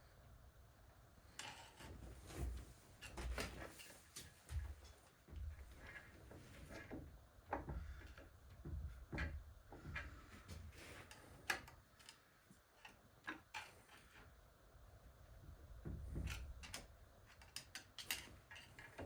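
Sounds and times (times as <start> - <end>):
tools clicking and knocking: 15.9 - 19.0.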